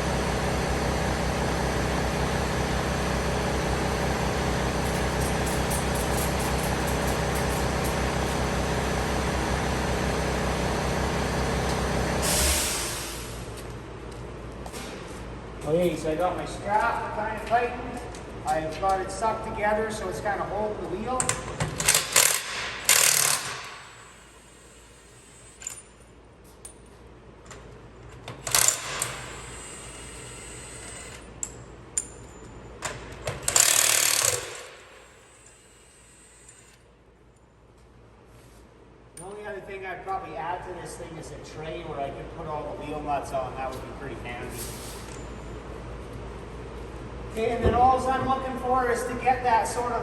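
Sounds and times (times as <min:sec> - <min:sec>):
machine humming: 0:00.0 - 0:13.4
metal parts clinking and rattling: 0:04.8 - 0:08.0.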